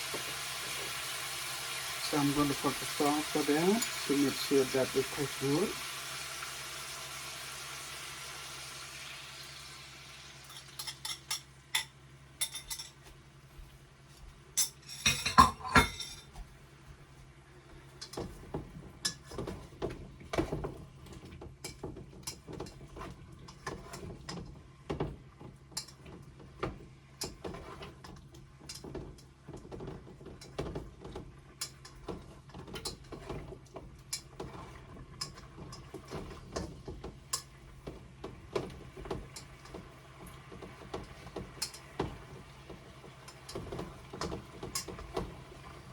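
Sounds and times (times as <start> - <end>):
food sizzling in a frying pan: 0.0 - 12.0.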